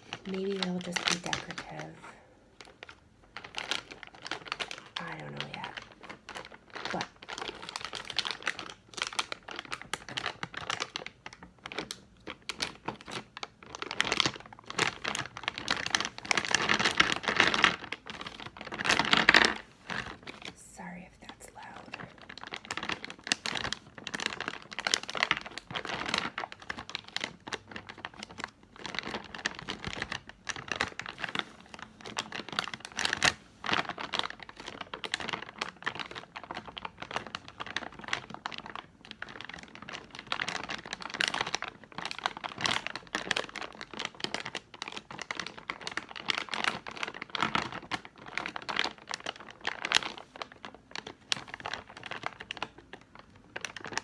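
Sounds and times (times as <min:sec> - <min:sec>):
plastic bag crinkling: 0:00.0 - 0:54.0.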